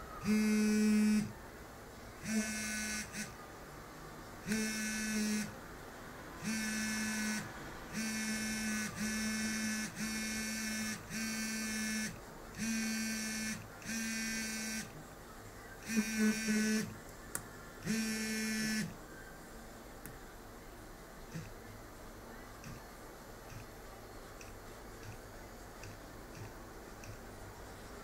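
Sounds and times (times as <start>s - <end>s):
phone vibrating: 0.2s - 1.4s, 2.2s - 3.4s, 4.4s - 5.6s, 6.4s - 15.0s, 15.8s - 16.9s, 17.8s - 19.0s.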